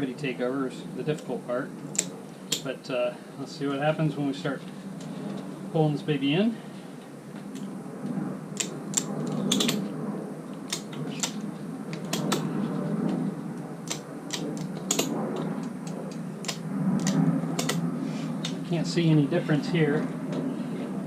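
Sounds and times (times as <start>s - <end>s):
steady low hum: 0.0s - 21.0s
ratchet strap clicking: 8.6s - 9.8s, 10.7s - 11.4s, 12.0s - 12.5s, 13.8s - 17.8s.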